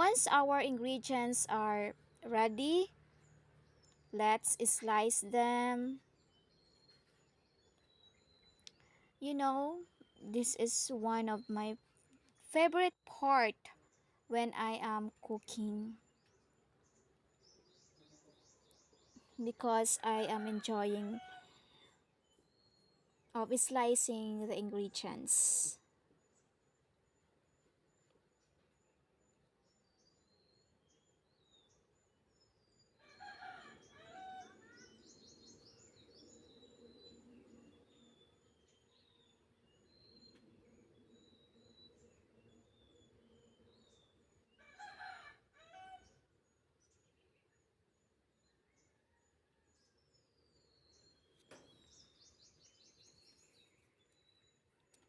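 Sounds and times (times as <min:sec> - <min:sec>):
small birds chirping: 0:00.0 - 0:45.2, 0:49.9 - 0:55.0
rooster crowing: 0:44.6 - 0:46.0.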